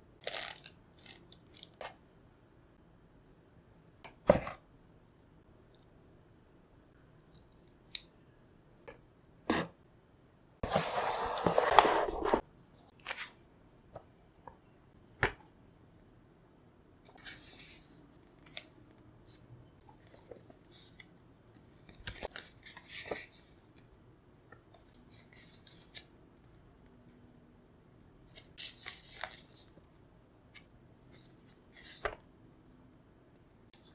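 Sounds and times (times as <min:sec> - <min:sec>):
packaging crinkling and tearing: 0:00.2 - 0:01.8.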